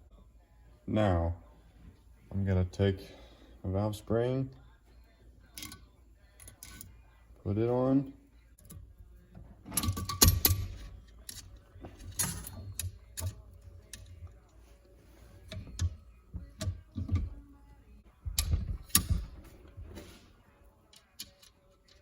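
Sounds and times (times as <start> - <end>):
metallic clicks and knocks: 9.6 - 14.2, 18.3 - 19.6.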